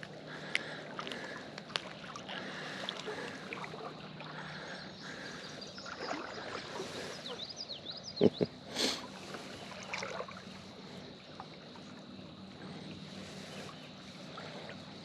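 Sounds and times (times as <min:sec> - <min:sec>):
small splashes and clicks: 0:00.0 - 0:04.4
creek water splashing and trickling: 0:00.0 - 0:15.0.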